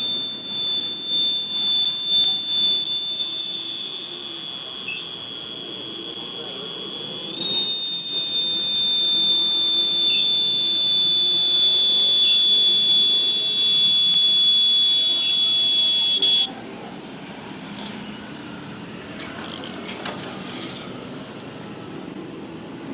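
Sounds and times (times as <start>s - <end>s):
cicada buzzing: 0.0s - 16.5s.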